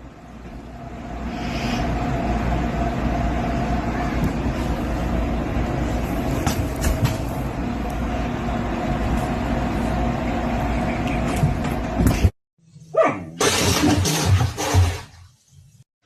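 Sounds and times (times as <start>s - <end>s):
mechanical rumble with hum: 0.0s - 12.4s.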